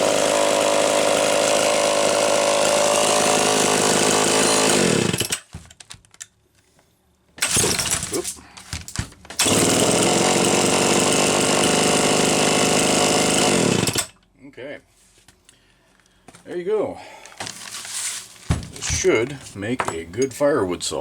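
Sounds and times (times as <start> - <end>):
chainsaw running: 0.0 - 5.5, 7.4 - 8.3, 9.4 - 14.2, 18.7 - 21.0.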